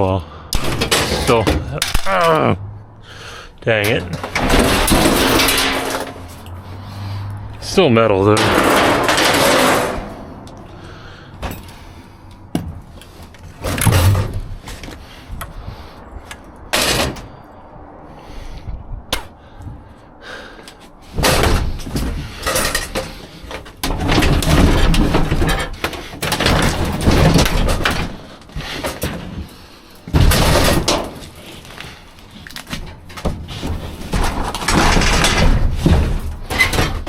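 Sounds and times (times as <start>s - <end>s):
scrap metal clanking in dumpster: 0.6s - 2.4s, 3.7s - 6.9s, 8.1s - 10.4s, 13.5s - 14.9s, 16.7s - 17.3s, 21.1s - 32.0s, 32.6s - 37.0s.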